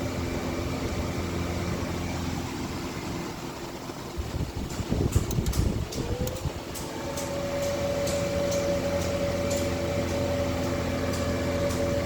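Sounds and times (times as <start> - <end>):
electric motor whine: 6.0 - 12.0.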